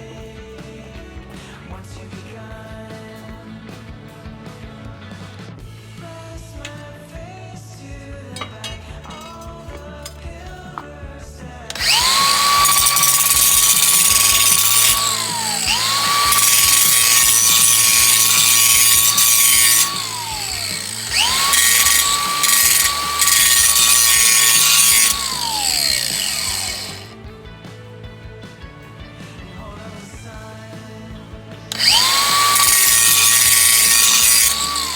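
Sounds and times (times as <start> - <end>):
power drill whining: 11.7 - 27.2, 31.7 - 34.9.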